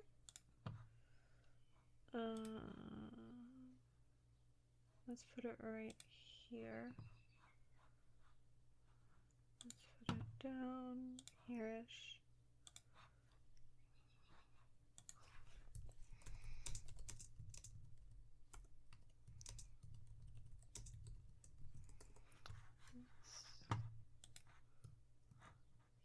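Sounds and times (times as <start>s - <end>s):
typing on computer keyboard: 15.0s - 22.8s.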